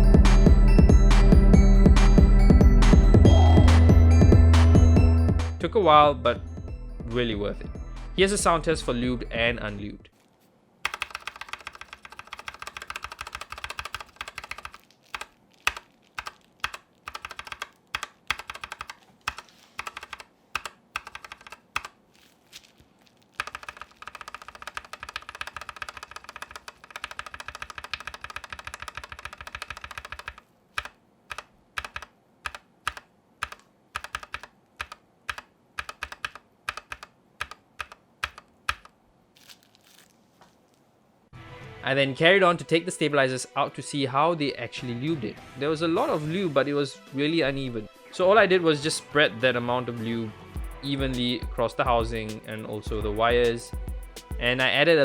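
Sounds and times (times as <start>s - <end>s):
keyboard typing: 10.8s - 22.0s, 23.3s - 39.0s, 50.6s - 55.0s
single keypresses: 23.4s - 38.9s.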